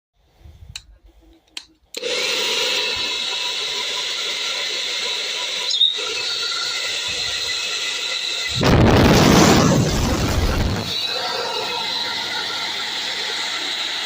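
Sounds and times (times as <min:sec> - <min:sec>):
hair dryer running: 0:02.0 - 0:04.8, 0:06.7 - 0:14.0.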